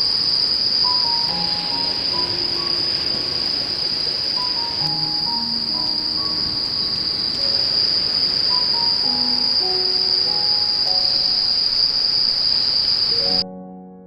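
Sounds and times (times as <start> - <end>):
insects trilling: 0.0 - 13.4
soft background music: 0.8 - 3.8, 4.4 - 7.8, 8.5 - 11.5.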